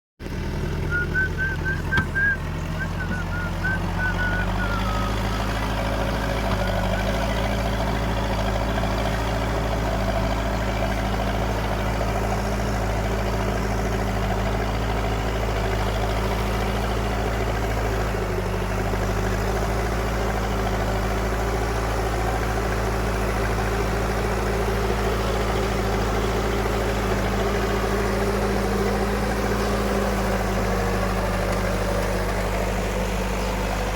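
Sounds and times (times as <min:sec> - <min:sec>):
heavy diesel engine running: 0:00.2 - 0:33.9
wavering high tone: 0:00.9 - 0:07.1.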